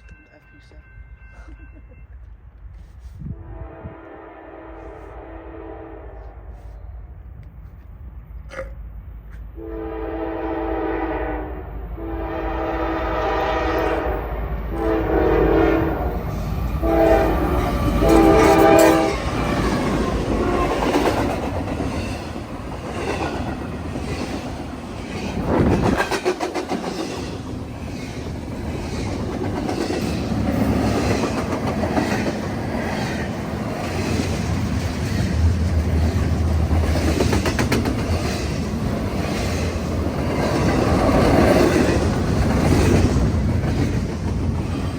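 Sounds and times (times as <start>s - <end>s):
train engine rumble: 0.0s - 44.9s
locomotive horn blasts: 3.2s - 6.8s, 9.5s - 16.1s, 16.8s - 19.4s
wheels clicking over rail joints: 17.5s - 44.9s.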